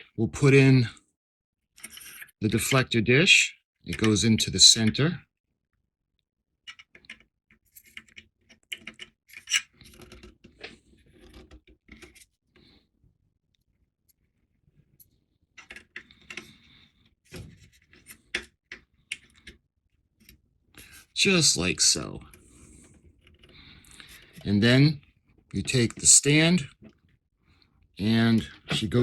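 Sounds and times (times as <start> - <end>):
plastic parts clicking: 7.8 - 12.2.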